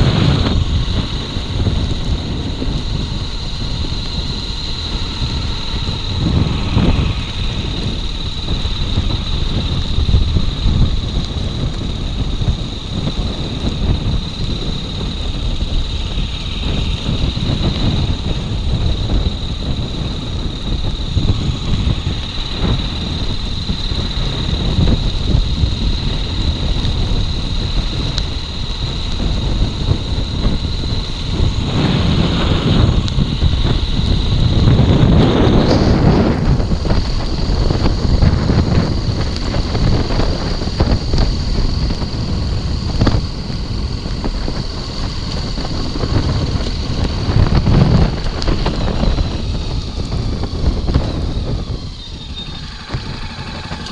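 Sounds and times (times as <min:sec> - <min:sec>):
motorcycle engine running: 0:00.0 - 0:53.9
steady high-pitched tone: 0:00.0 - 0:53.9
wind buffeting microphone: 0:00.0 - 0:53.9.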